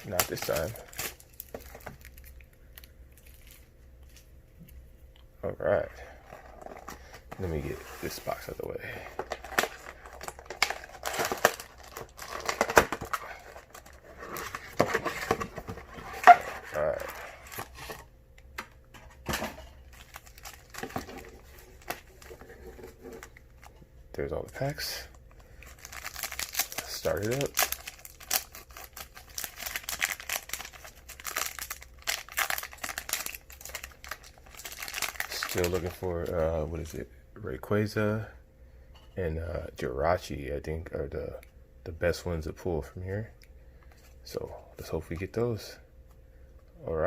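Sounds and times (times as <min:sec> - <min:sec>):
foil packs crinkling and rustling: 0:00.0 - 0:04.3, 0:06.0 - 0:18.1, 0:19.8 - 0:23.7, 0:24.4 - 0:37.0.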